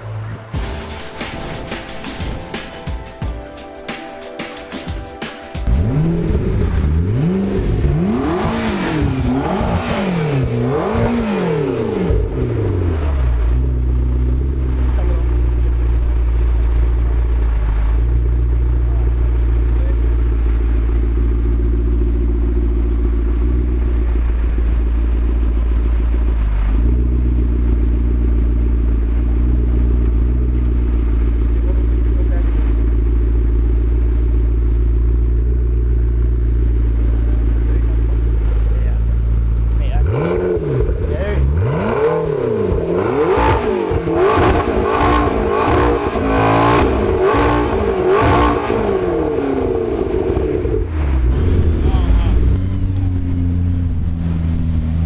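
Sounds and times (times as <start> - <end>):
car engine idling: 0.0 - 3.8, 5.6 - 55.0.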